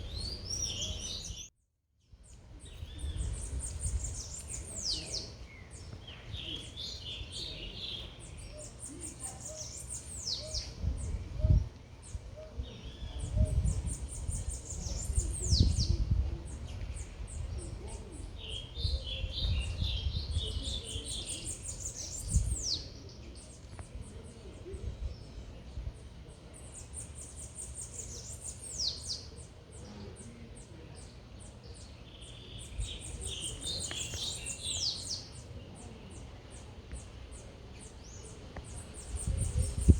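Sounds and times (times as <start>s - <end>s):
songbird trills and whistles: 0.0s - 1.5s, 2.6s - 11.7s.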